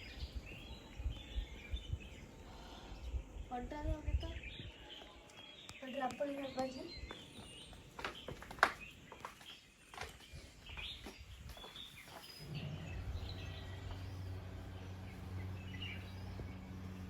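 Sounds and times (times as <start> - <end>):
small birds chirping: 0.0 - 17.0
steady low hum: 12.4 - 17.0.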